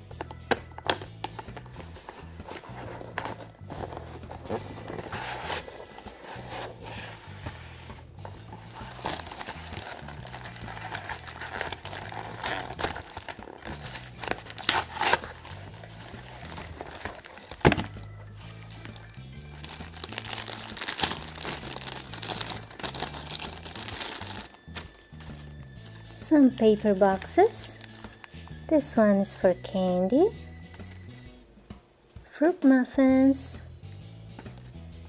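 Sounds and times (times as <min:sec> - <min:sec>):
background music with bass line: 0:00.0 - 0:31.9, 0:33.2 - 0:35.0
packaging crinkling and rustling: 0:01.5 - 0:28.6.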